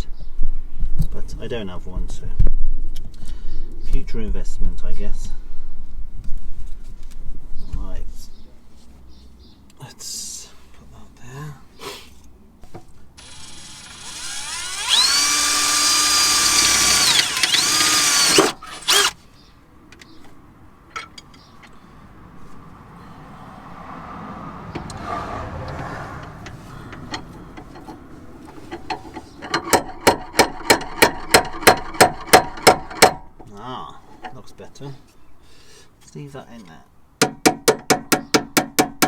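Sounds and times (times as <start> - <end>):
electric drill drilling into steel: 13.2 - 19.2.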